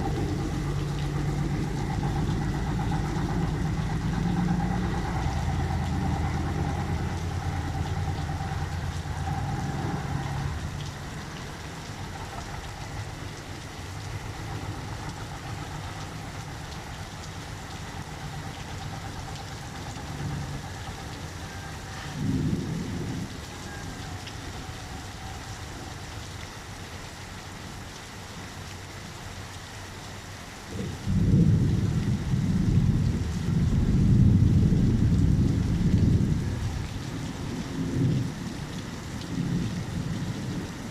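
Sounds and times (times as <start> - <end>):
thunder rumbling: 0.0 - 25.1, 30.7 - 40.9
steady rain: 0.0 - 40.9.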